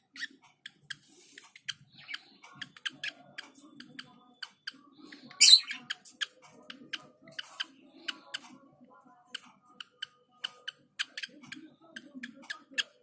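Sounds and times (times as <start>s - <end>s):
lovebirds chirping: 5.1s - 6.0s
harsh bird squawk: 5.4s - 5.8s.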